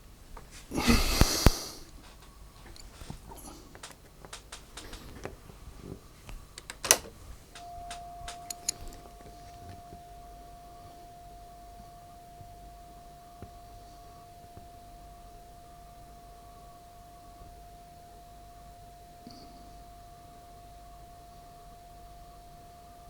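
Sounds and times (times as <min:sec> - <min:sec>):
steady pure test tone: 0:00.8 - 0:23.0
switch clicks and handling knocks: 0:03.7 - 0:05.4, 0:06.6 - 0:09.8.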